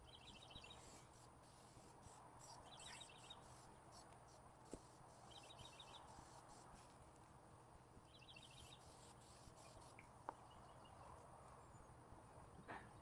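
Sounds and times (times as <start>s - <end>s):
faint high chirping trill: 0.0s - 1.0s, 2.4s - 3.6s, 5.2s - 6.2s, 8.1s - 11.9s.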